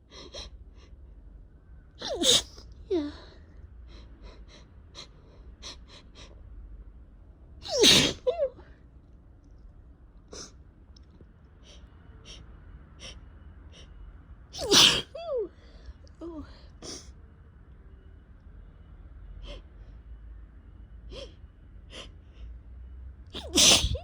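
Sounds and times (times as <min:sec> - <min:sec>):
person sneezing: 0:02.0 - 0:02.6, 0:07.6 - 0:08.4, 0:14.6 - 0:15.2, 0:23.4 - 0:24.0.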